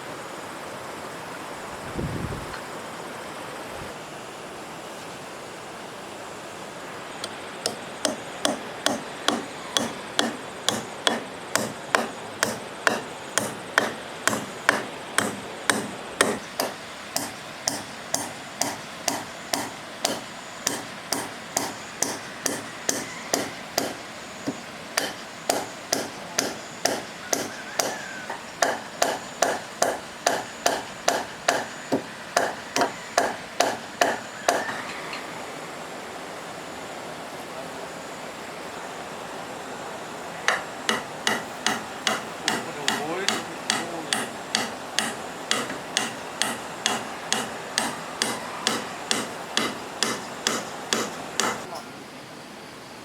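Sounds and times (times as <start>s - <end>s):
hammer striking wood: 7.2s - 34.8s, 40.5s - 51.7s.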